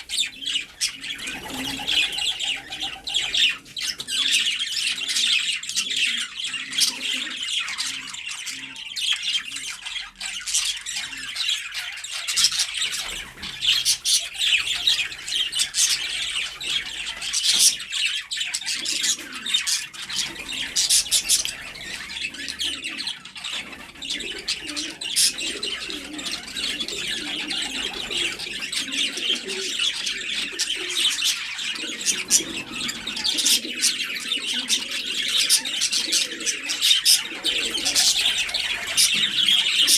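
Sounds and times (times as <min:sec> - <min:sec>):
birds chirping and twittering: 0:00.0 - 0:39.9
low cooing: 0:20.6 - 0:39.9.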